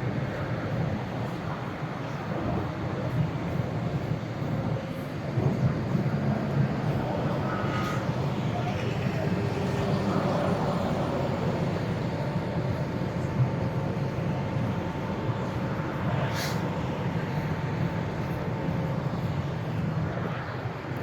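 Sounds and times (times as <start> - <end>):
city traffic rumble: 0.0 - 21.0
faint steady whine: 0.0 - 21.0
brief high hiss: 16.3 - 16.7.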